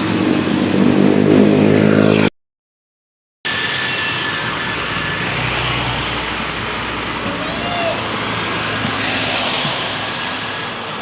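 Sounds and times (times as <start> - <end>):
roadside traffic noise: 0.0 - 2.3, 3.4 - 11.0
bus engine droning: 3.5 - 11.0.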